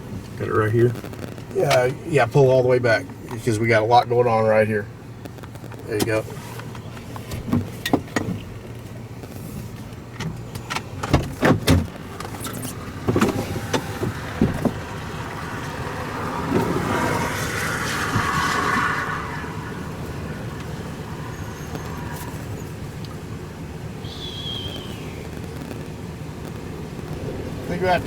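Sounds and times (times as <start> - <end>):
vehicle cabin hum: 0.0 - 28.0
rushing noise: 12.4 - 28.0.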